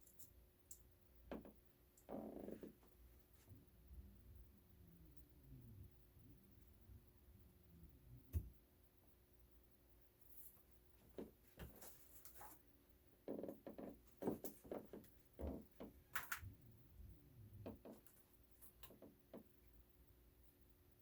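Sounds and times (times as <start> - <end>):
clicks and knocks of objects handled: 14.2 - 16.5.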